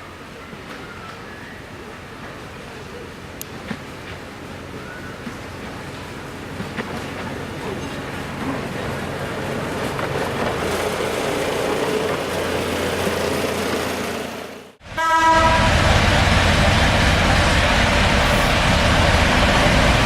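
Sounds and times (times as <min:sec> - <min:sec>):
miniature train on track: 0:00.0 - 0:20.0
locomotive engine running: 0:02.1 - 0:20.0
train horn blast: 0:14.8 - 0:16.1.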